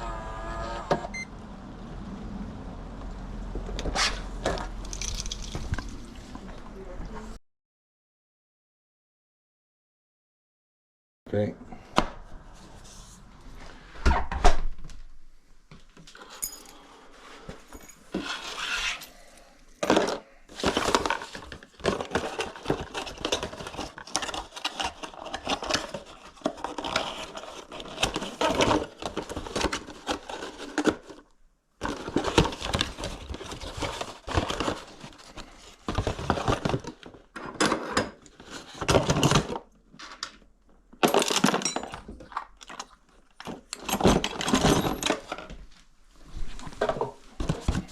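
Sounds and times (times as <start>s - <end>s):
small metal objects clinking: 4.8s - 5.9s.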